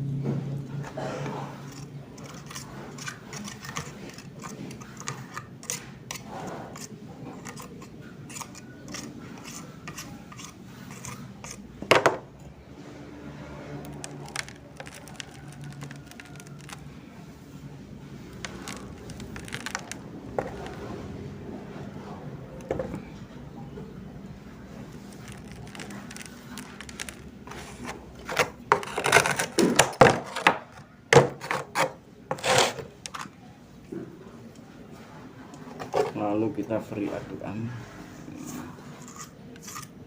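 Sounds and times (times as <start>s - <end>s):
small scrapes: 1.2s - 11.8s, 12.8s - 22.1s, 24.7s - 30.5s, 31.4s - 33.3s, 37.7s - 40.0s.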